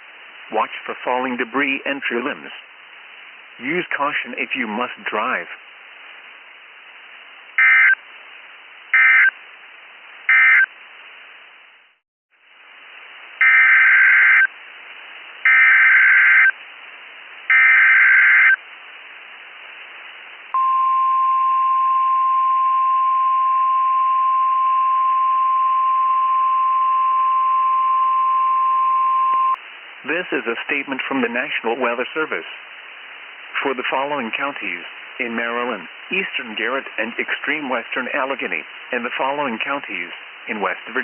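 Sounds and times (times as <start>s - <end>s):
steady warning alarm tone: 15.5s - 16.5s, 17.5s - 18.6s.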